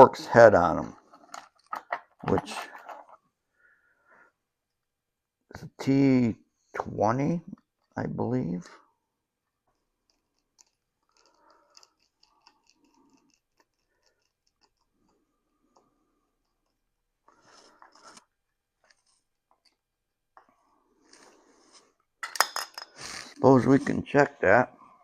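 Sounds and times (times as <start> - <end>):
screwdriver ticking and scraping: 9.7 - 16.9.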